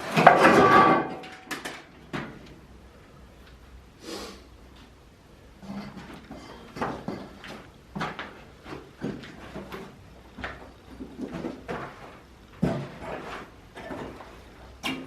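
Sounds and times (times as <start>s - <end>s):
knocks clatters and scrapes: 0.0s - 2.4s, 5.6s - 10.0s, 10.9s - 15.0s.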